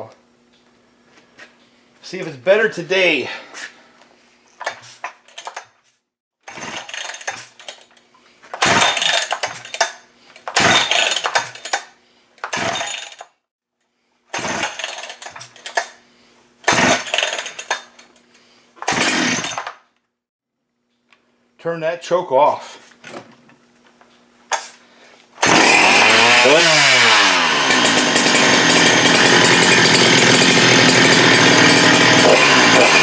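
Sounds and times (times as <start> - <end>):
engine turning over: 4.6 - 5.7, 6.5 - 8.0, 8.6 - 13.3, 14.3 - 16.0, 16.6 - 18.2, 18.8 - 19.8, 25.4 - 33.0
chainsaw starter rope yanked: 4.6 - 5.8, 6.5 - 13.4, 14.3 - 16.0, 16.6 - 19.8, 24.5 - 24.8, 25.4 - 33.0.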